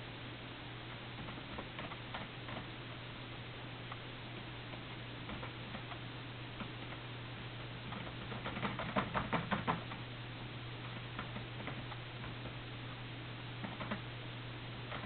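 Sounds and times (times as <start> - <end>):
steady low hum: 0.0 - 15.0
eating clicks and crackles: 3.9 - 10.1.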